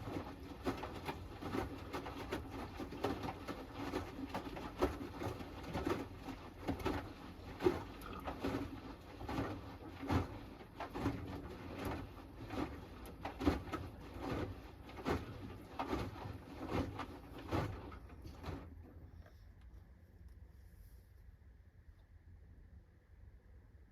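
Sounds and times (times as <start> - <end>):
washing machine drum humming: 0.0 - 19.1
laundry and water sloshing: 0.0 - 19.4.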